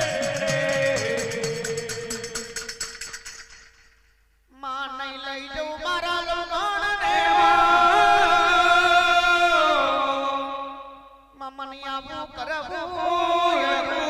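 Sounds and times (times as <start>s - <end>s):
person singing devotional song: 0.0s - 3.1s, 4.5s - 14.0s.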